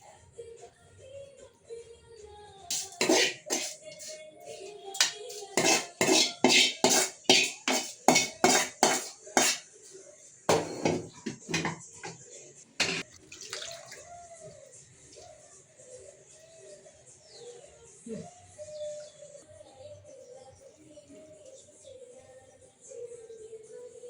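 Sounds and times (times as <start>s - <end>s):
faint background music: 0.0s - 24.0s
spoon clanking on metal pot: 2.7s - 4.2s, 4.9s - 9.6s, 10.5s - 12.2s, 12.8s - 13.1s.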